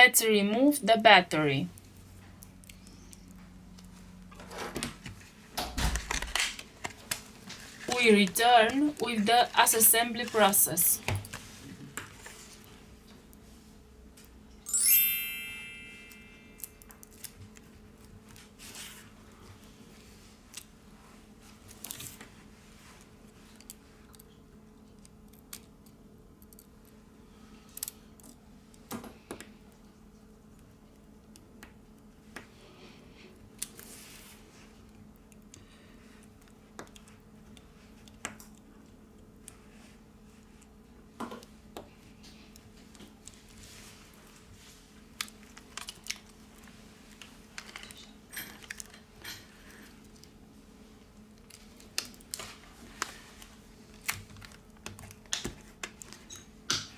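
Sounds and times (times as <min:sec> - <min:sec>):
faint steady hum: 0:00.0 - 0:05.6, 0:06.5 - 0:56.9
bright chime ringing: 0:14.7 - 0:16.8
faint clicks and taps: 0:34.8 - 0:39.6.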